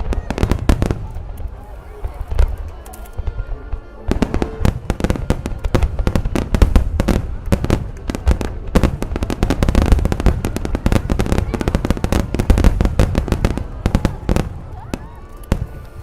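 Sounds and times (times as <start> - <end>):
music playing: 2.0 - 6.4
firework shell bursts and crackling: 2.2 - 14.4.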